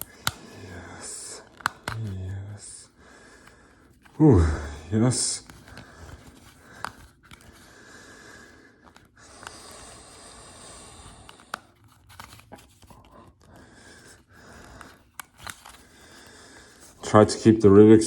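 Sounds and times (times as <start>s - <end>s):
puzzle cube clicking: 0.0s - 0.8s, 1.4s - 2.1s, 3.4s - 7.7s, 11.2s - 15.9s.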